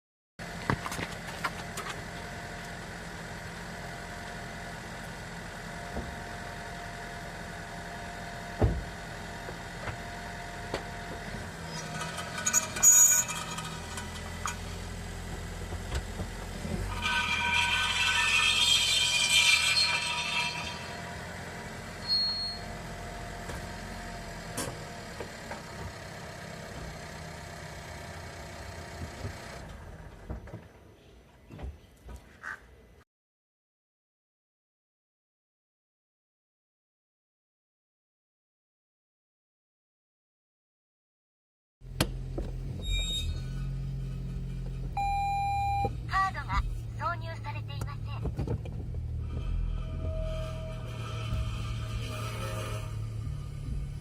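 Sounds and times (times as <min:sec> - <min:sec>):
low car running hum: 0:00.4 - 0:31.8, 0:41.8 - 0:54.0
metallic brake scraping squeal: 0:11.5 - 0:14.8, 0:16.8 - 0:22.8, 0:42.8 - 0:45.8, 0:49.1 - 0:54.0.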